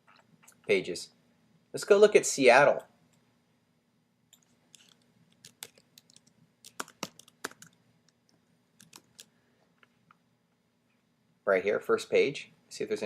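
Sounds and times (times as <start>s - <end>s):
typing on computer keyboard: 4.4s - 7.8s, 8.8s - 9.3s.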